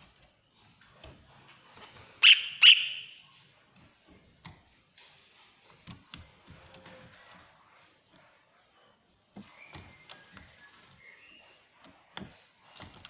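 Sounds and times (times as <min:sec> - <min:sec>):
bird shrill calls: 0:02.2 - 0:03.2.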